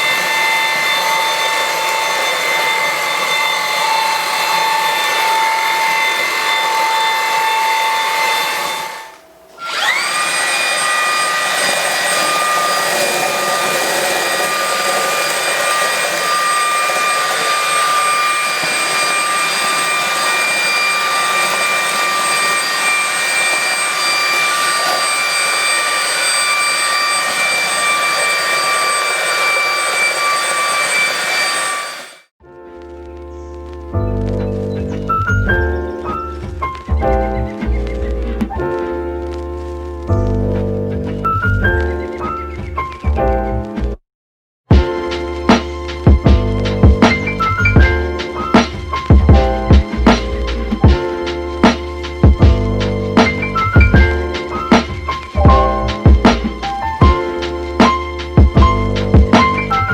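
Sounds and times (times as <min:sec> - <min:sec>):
cordless vacuum motor whine: 0:00.0 - 0:32.3, 0:44.8 - 0:59.9.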